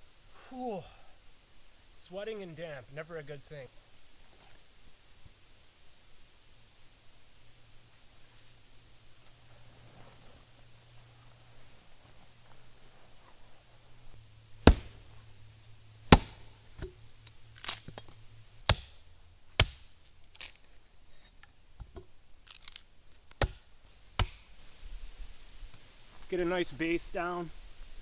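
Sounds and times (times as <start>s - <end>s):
wood cracking and knocking: 14.6s - 15.0s.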